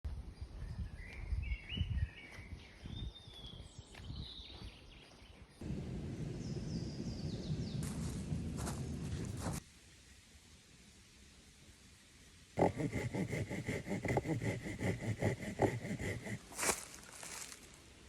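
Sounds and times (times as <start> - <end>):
wind rumble on microphone: 0.1 - 4.7, 5.6 - 9.6
birds chirping: 0.4 - 9.6.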